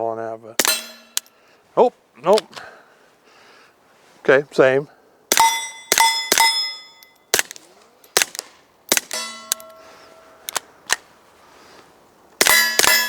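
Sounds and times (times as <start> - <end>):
steel targets clanging: 0.6 - 1.4, 5.3 - 7.2, 9.1 - 10.4, 12.4 - 13.0
suppressed pistol shots: 5.3 - 6.7, 7.3 - 9.8.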